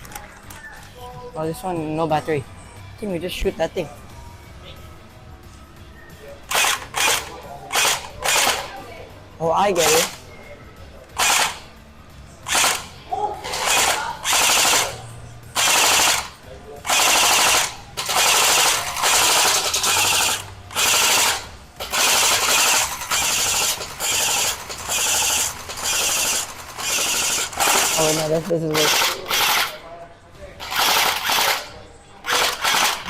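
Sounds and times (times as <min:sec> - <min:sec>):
toy blaster full-auto bursts: 0:06.5 - 0:08.7, 0:11.2 - 0:11.6, 0:12.5 - 0:12.9, 0:13.5 - 0:15.0, 0:15.6 - 0:29.7, 0:30.6 - 0:33.0.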